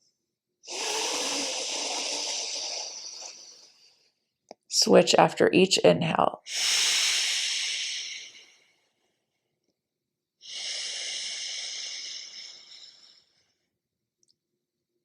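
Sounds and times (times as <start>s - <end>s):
airy breathing through nostril: 0.7s - 4.0s, 6.4s - 8.7s, 10.4s - 13.5s.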